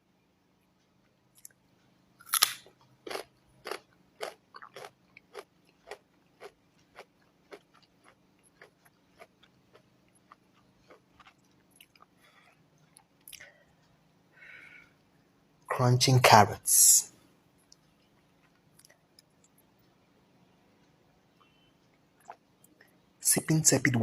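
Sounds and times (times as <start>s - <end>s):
person biting a carrot: 2.2s - 4.9s
carrot chewing crunches: 2.2s - 12.1s.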